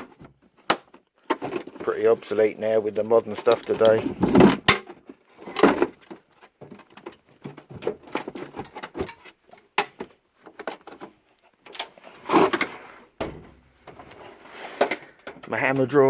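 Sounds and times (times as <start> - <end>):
tool chest drawers sliding: 3.3 - 6.3, 6.9 - 16.0.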